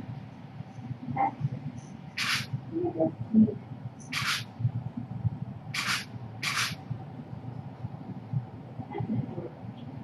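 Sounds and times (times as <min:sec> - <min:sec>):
camera shutter clicks: 0:02.2 - 0:02.5, 0:04.1 - 0:04.4, 0:05.8 - 0:06.8.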